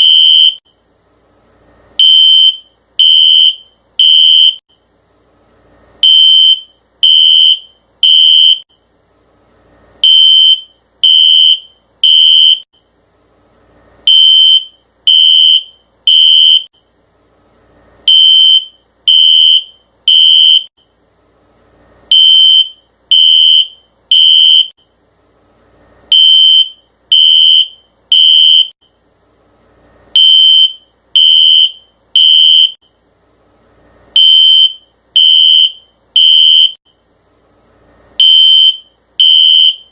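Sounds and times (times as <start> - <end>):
fire alarm beeping: 0.0 - 0.6, 2.0 - 4.6, 6.0 - 8.7, 10.0 - 12.7, 14.1 - 16.8, 18.1 - 20.7, 22.1 - 24.8, 26.1 - 28.8, 30.2 - 32.8, 34.2 - 36.8, 38.2 - 39.9.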